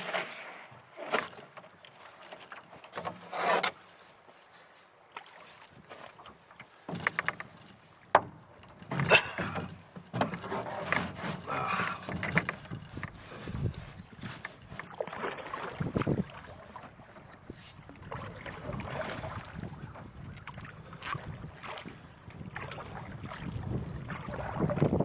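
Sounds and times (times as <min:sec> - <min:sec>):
water splashing and swishing: 0:00.0 - 0:25.0
paddle knocking against hull: 0:05.2 - 0:25.0.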